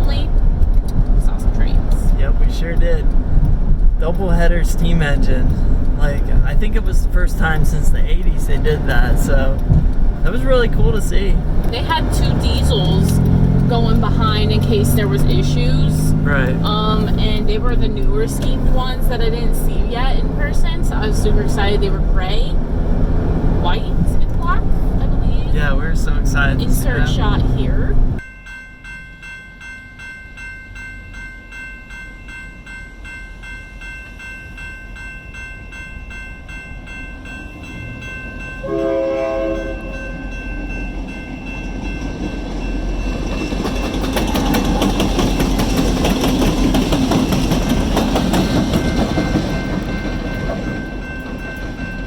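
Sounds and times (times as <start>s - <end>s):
train wheels rolling on rails: 0.1s - 28.2s, 39.8s - 52.0s
train signal blast: 38.6s - 40.4s.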